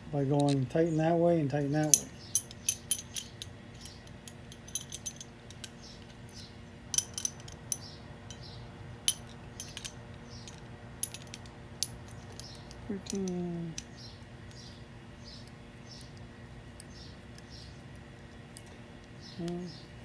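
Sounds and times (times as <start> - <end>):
metal wrenches clicking on fittings: 1.8 - 6.3, 7.0 - 8.4, 9.1 - 13.9.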